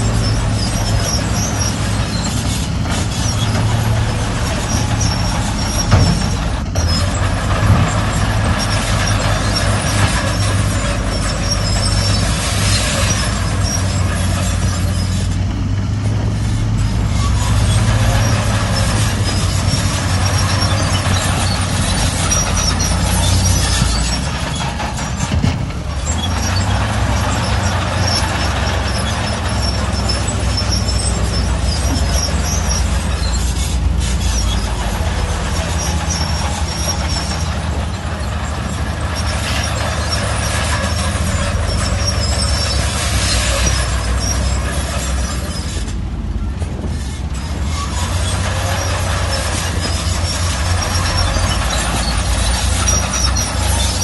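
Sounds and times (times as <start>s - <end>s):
diesel machinery engine drone: 0.0s - 54.0s
high squeaks: 0.0s - 54.0s.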